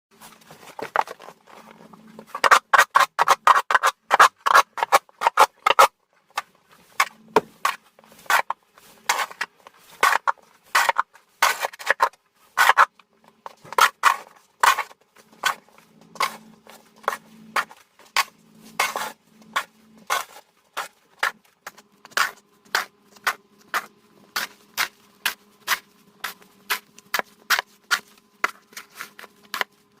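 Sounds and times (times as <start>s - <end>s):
faint steady hum: 0.2s - 30.0s
shovel scraping snow: 13.8s - 21.4s.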